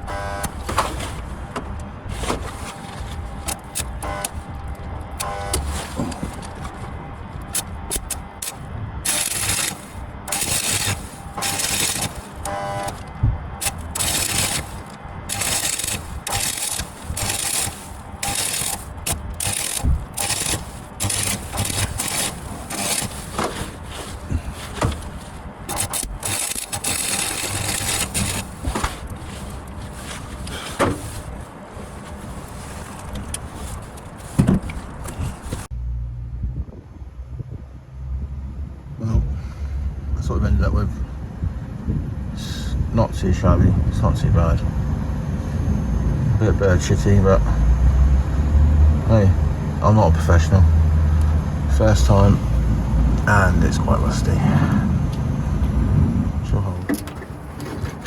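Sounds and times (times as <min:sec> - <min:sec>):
welder crackling hiss: 0:07.9 - 0:13.0, 0:13.6 - 0:31.4.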